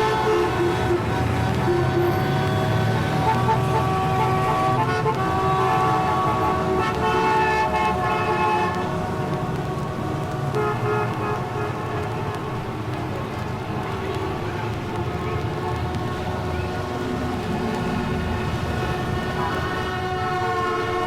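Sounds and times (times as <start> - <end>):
car horns honking: 0.0 - 8.9, 19.2 - 21.0
engines rumbling: 0.0 - 21.0.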